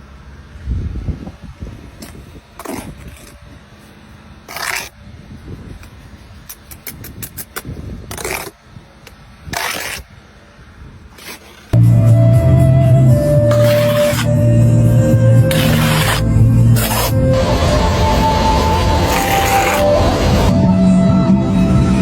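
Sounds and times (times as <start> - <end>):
trowel scraping mortar: 2.0 - 3.4, 4.4 - 5.0, 6.5 - 8.6, 9.5 - 10.1, 11.1 - 11.8, 13.5 - 14.4, 15.4 - 20.5.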